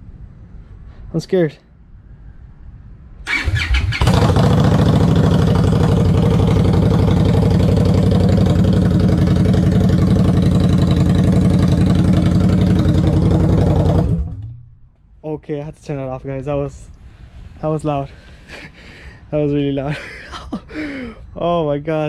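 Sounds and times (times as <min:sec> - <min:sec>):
loud motorcycle engine idling: 0:04.0 - 0:14.5.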